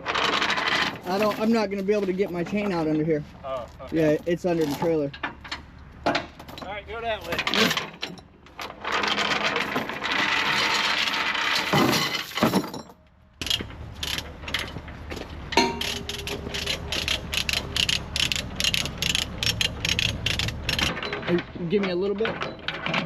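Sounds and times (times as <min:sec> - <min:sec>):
metal chain clinking and rattling: 0:03.7 - 0:23.0
low engine hum: 0:13.2 - 0:21.6.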